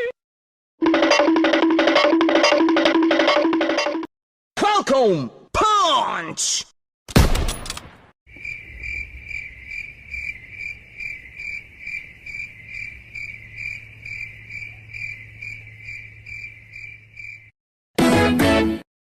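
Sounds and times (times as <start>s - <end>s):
cricket chirping: 8.3s - 17.5s.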